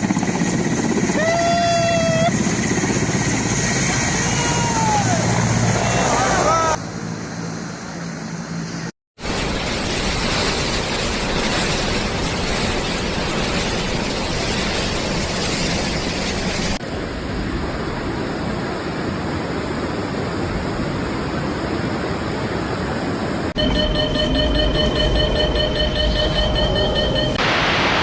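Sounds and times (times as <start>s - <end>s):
water rushing: 9.2s - 23.6s, 27.4s - 28.0s
faint steady tones: 23.6s - 27.4s.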